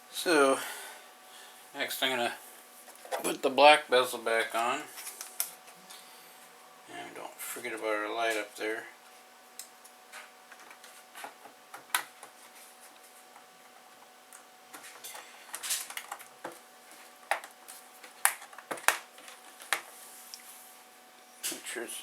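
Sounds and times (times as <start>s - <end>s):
plastic parts clicking and tapping: 14.7s - 16.6s.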